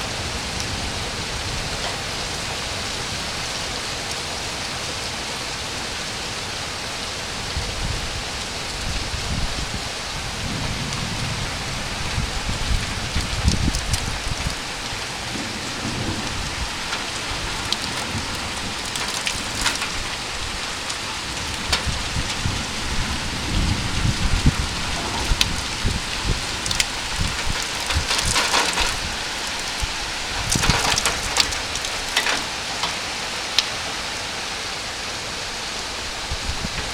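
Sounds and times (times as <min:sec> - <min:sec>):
rain falling: 0:00.0 - 0:36.9
low rumbles: 0:10.2 - 0:33.0
raindrops splatting: 0:10.3 - 0:34.2.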